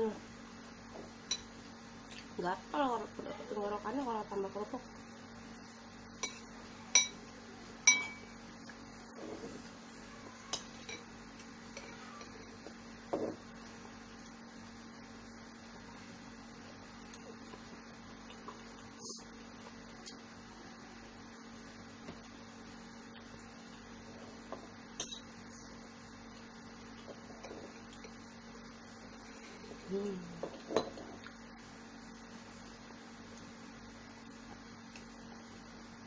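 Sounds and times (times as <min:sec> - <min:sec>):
steady low hum: 0:00.0 - 0:36.0
spoon clinking against bowl: 0:06.2 - 0:07.2, 0:07.8 - 0:08.3.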